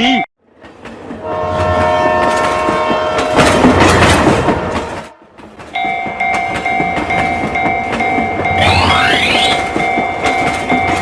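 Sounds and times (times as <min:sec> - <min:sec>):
passing train rumble and clatter: 0:00.4 - 0:08.6, 0:09.5 - 0:11.0
train horn: 0:01.2 - 0:03.5
railroad crossing alarm dinging: 0:05.8 - 0:11.0.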